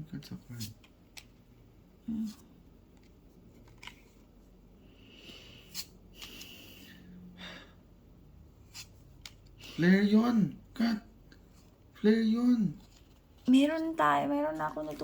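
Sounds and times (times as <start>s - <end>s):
trading cards rustling and clicking: 2.2s - 4.4s, 8.6s - 9.6s, 12.7s - 13.9s, 14.6s - 15.0s.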